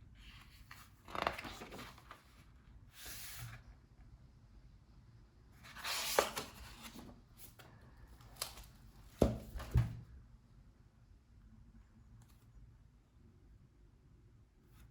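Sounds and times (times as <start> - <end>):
book page turning: 0.2 - 3.6, 5.6 - 7.6
book thumping: 9.2 - 10.0.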